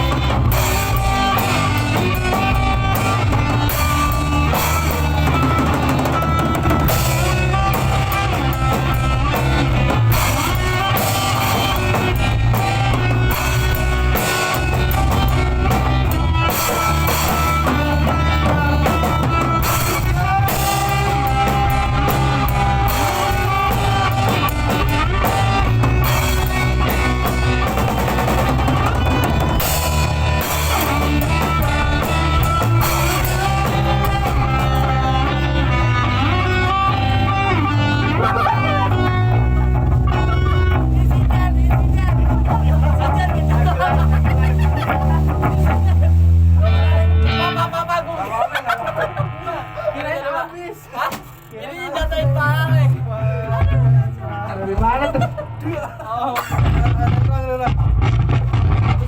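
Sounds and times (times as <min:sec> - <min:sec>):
loud rock music: 0:00.0 - 0:59.0.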